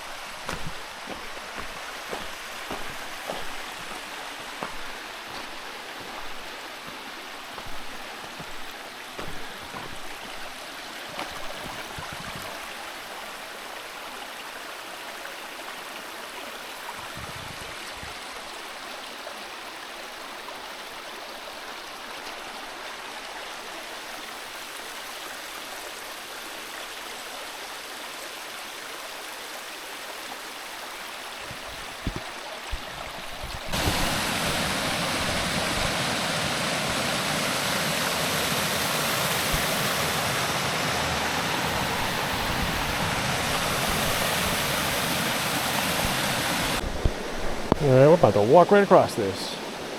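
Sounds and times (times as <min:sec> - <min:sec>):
creek rushing over rocks: 0:00.0 - 0:49.9
soft thumps: 0:00.4 - 0:04.0, 0:07.6 - 0:10.5, 0:31.5 - 0:34.6.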